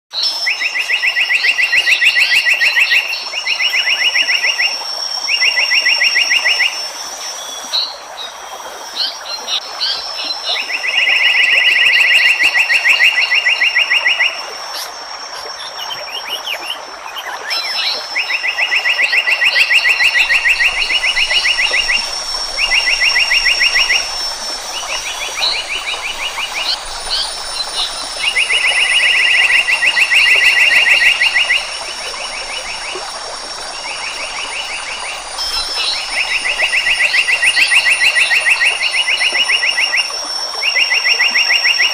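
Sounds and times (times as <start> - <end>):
birds chirping: 13.0 - 40.2
steady high whine: 19.7 - 40.6.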